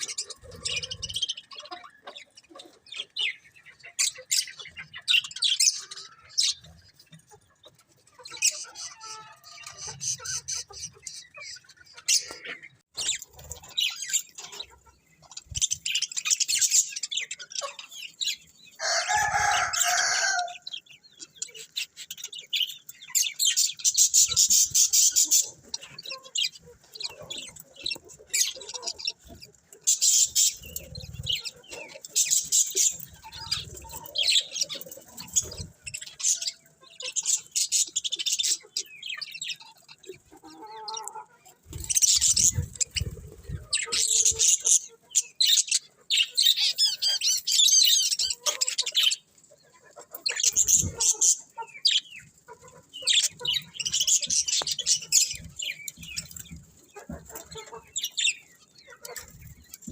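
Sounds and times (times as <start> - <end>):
budgerigars chirping: 0.0 - 49.3, 49.9 - 59.9.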